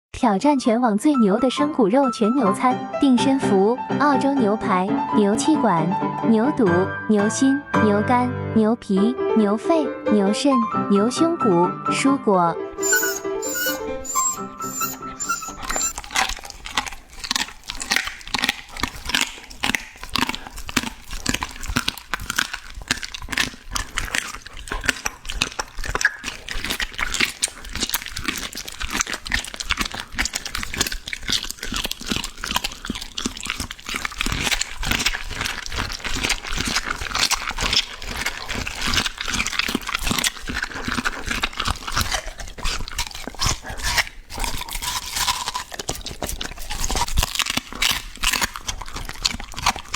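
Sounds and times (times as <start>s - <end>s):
dog chewing and crunching bone: 12.8s - 49.9s.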